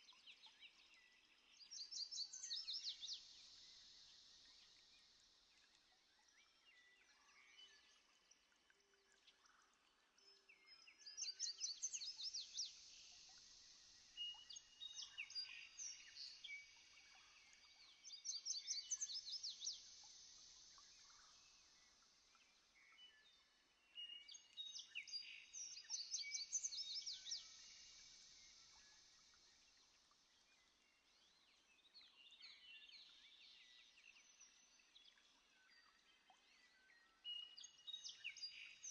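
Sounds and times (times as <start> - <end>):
birds singing and calling: 10.6 - 20.0, 23.9 - 29.0.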